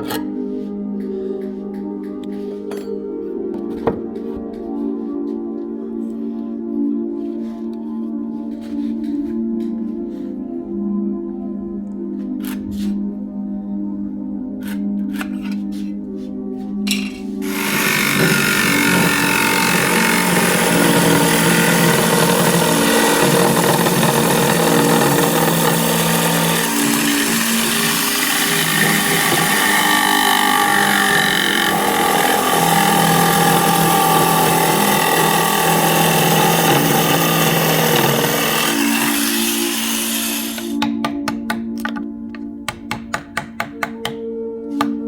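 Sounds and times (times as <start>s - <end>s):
power tool cutting wood: 16.9s - 40.8s.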